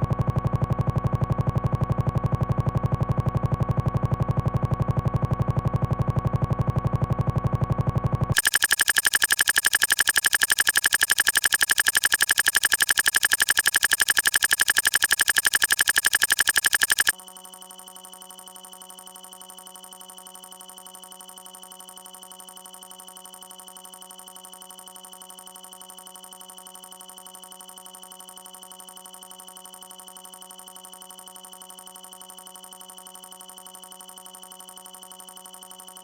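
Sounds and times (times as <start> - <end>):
electronic trilling tone: 8.4 - 17.1.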